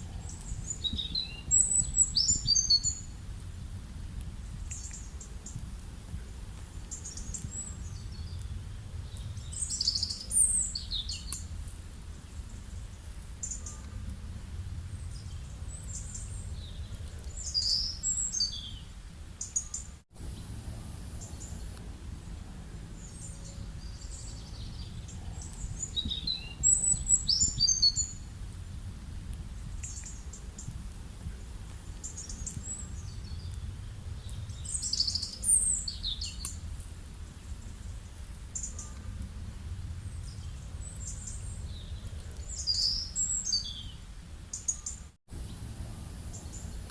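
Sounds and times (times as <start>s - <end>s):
birds chirping and whistling: 0.0s - 3.2s, 6.9s - 11.5s, 14.9s - 19.9s, 22.9s - 28.3s, 31.9s - 36.6s, 40.0s - 45.1s
low outdoor rumble: 0.0s - 19.4s, 20.1s - 44.6s, 45.3s - 46.9s.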